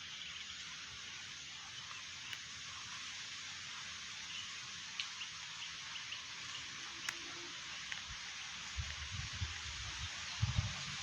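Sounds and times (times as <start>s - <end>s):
faint clicks: 7.0s - 9.0s
strong wind hissing: 8.7s - 11.0s.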